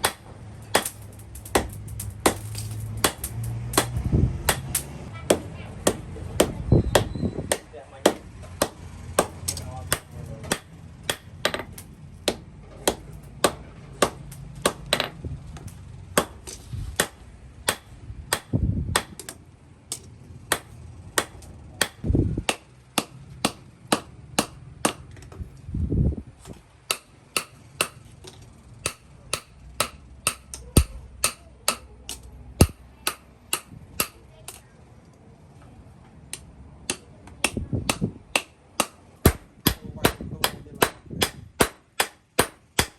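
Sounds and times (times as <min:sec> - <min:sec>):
hammer blows on steel: 0:00.0 - 0:11.6.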